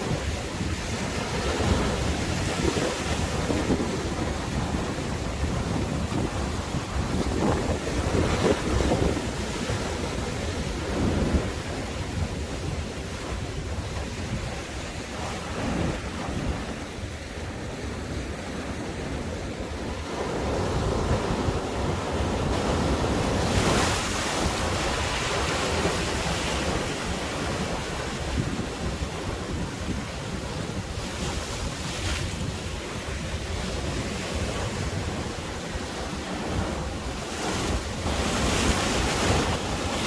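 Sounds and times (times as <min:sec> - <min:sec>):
surf breaking on sandy beach: 0:00.0 - 0:40.0
wind buffeting microphone: 0:00.0 - 0:40.0.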